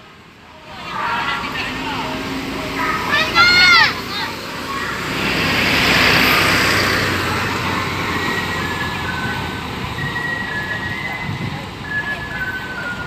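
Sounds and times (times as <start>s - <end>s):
traffic hum: 0.0s - 13.0s
vehicle passing by: 0.6s - 13.0s.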